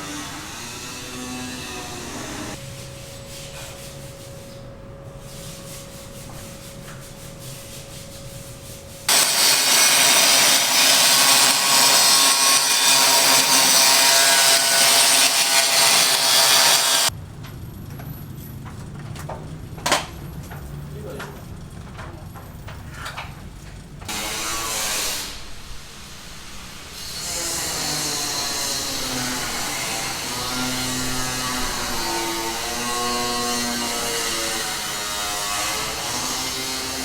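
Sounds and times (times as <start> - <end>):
construction tool rasping: 9.1 - 17.1.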